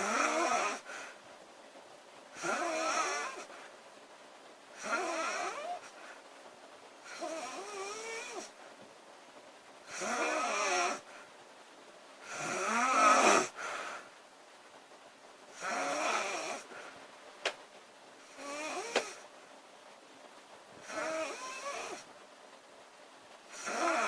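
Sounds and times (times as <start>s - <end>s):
woman snoring loudly: 0.0s - 0.9s, 2.4s - 3.5s, 4.8s - 5.9s, 7.1s - 8.5s, 9.9s - 11.1s, 12.2s - 13.6s, 15.6s - 16.7s, 18.2s - 19.2s, 20.8s - 22.1s, 23.5s - 24.0s.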